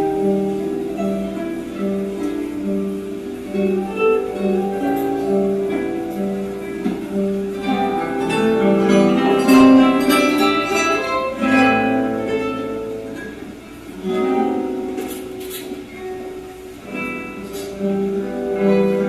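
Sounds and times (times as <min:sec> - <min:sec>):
plucked acoustic guitars: 0:00.0 - 0:19.0.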